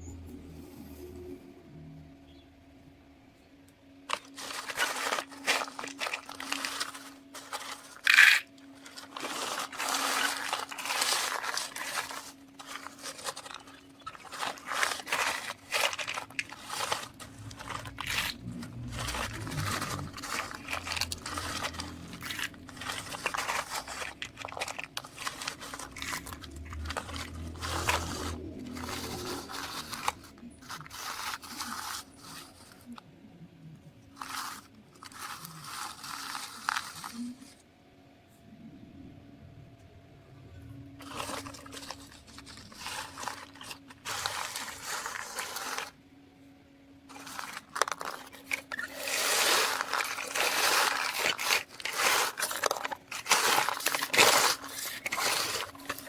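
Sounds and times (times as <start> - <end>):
faint steady hum: 0.0 - 56.0
corn crunching and scraping: 4.0 - 33.0, 34.0 - 37.6, 41.0 - 46.0, 47.1 - 56.0
deep rumble: 17.0 - 24.2.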